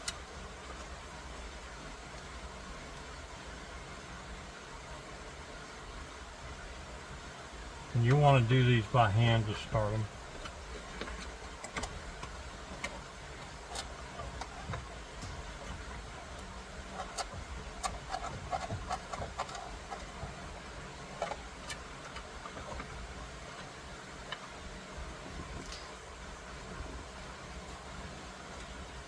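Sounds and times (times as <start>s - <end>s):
steady low hum: 0.0s - 29.0s.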